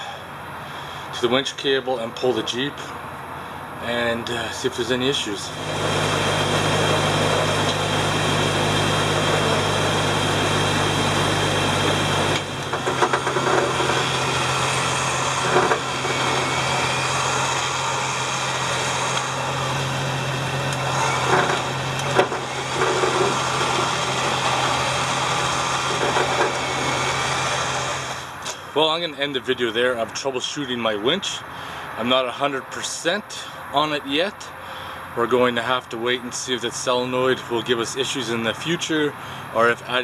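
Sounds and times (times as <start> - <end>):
engine running: 0.0 - 40.0
electric winch running: 3.3 - 29.7.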